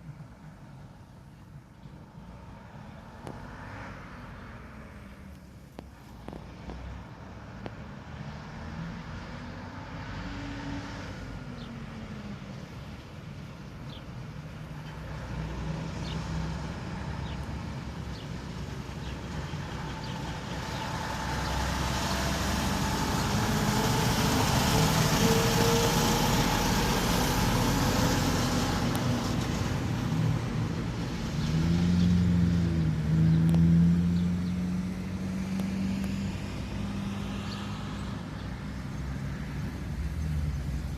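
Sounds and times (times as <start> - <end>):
vehicle driving past: 6.8 - 12.9, 14.7 - 40.9
engine revving: 15.1 - 40.9.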